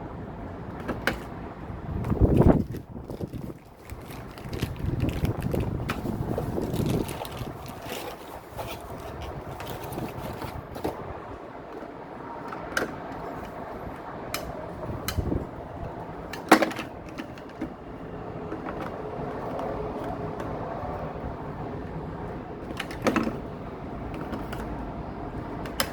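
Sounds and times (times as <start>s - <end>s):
packaging rustle: 2.0s - 11.0s.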